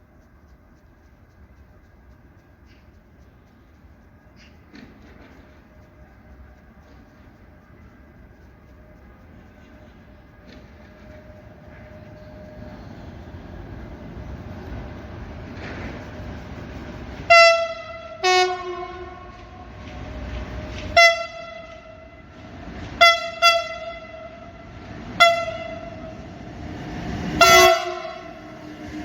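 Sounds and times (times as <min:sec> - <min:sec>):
passing train rumble: 0:00.0 - 0:29.0
locomotive horn blasts: 0:17.3 - 0:20.0, 0:20.7 - 0:26.3, 0:27.4 - 0:28.8.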